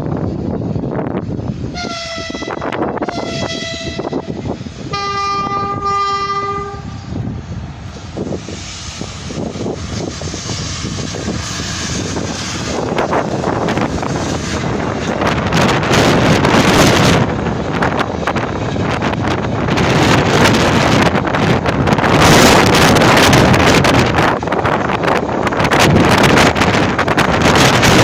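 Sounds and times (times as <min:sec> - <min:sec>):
rumble of passing freight train: 0:00.0 - 0:28.0
wind buffeting microphone: 0:00.0 - 0:28.0
electric locomotive horn blasts: 0:01.7 - 0:07.1.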